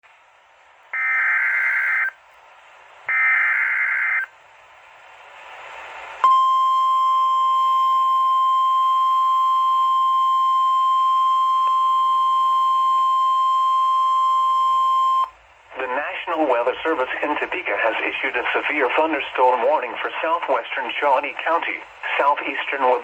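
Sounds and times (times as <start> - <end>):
steady warning alarm tone: 1.0 - 2.2, 3.1 - 4.3.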